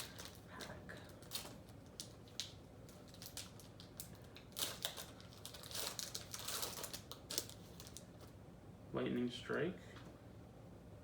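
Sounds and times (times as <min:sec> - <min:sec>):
wrapper crinkling: 0:00.0 - 0:08.1.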